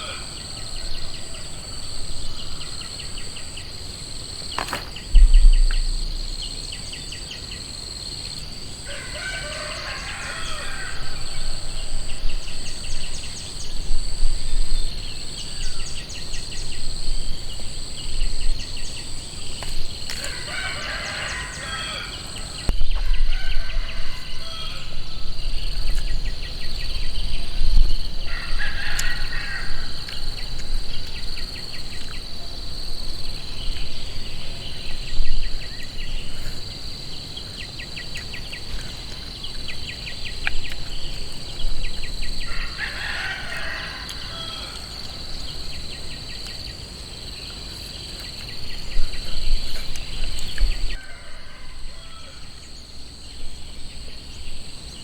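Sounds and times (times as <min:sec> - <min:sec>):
rooster crowing: 0:00.0 - 0:01.6, 0:08.8 - 0:11.8, 0:20.2 - 0:25.1, 0:28.3 - 0:30.0, 0:42.4 - 0:45.2, 0:50.9 - 0:52.6
high insect drone: 0:00.0 - 0:55.0.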